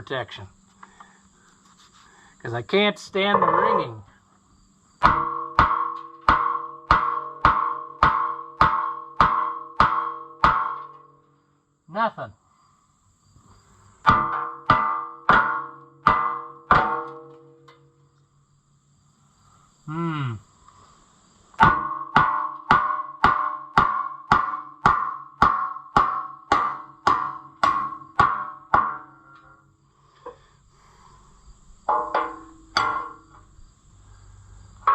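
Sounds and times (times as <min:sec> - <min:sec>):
hammer blows on ringing steel rim: 0:05.0 - 0:11.2, 0:14.0 - 0:17.9.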